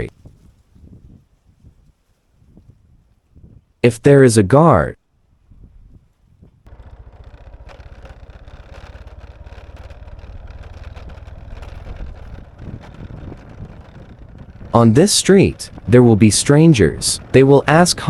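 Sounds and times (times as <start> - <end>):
road and wind noise: 0.0 - 18.0
vehicle engine running: 6.7 - 18.0.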